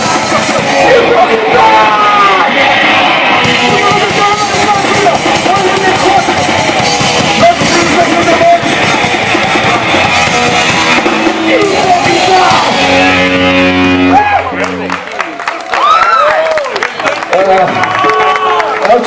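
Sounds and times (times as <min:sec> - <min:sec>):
driving drums: 0:00.0 - 0:14.8
distorted electric guitar: 0:00.0 - 0:15.2
bass guitar: 0:00.0 - 0:15.5.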